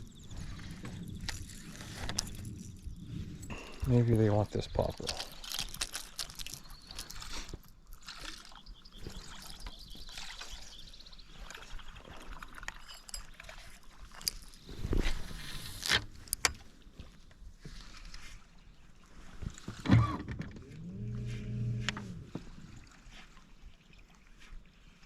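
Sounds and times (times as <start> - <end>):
water sloshing against boat hull: 4.5 - 25.0.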